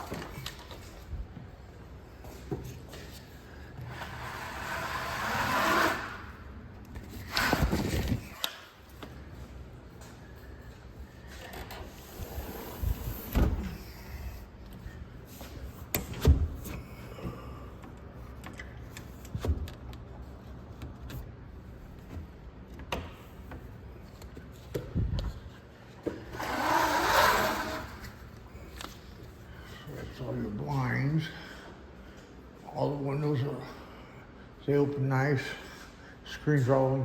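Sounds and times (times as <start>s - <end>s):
window sliding: 3.9s - 6.3s, 26.2s - 28.3s.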